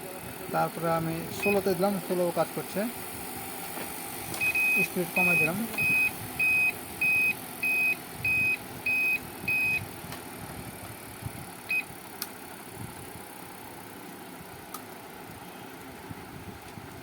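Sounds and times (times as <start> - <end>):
short beeps: 4.4 - 9.8.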